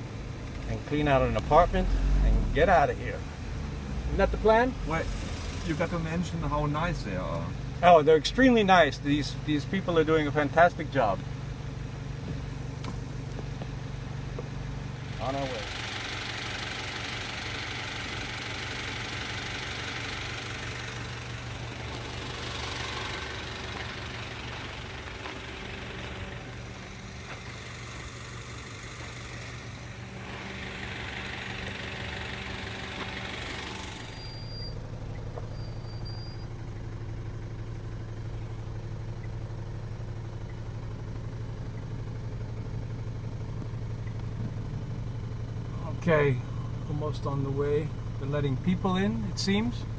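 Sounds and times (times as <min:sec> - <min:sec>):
road noise rushing: 0:00.0 - 0:09.3, 0:14.9 - 0:37.7
car engine hum: 0:00.0 - 0:49.9.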